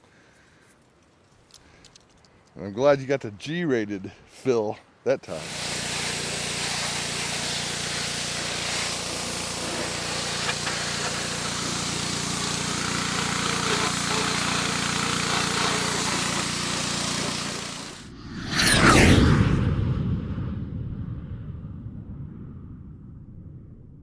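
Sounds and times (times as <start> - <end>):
pressure washer engine humming: 5.3 - 18.1
spraying water hiss: 5.3 - 18.1.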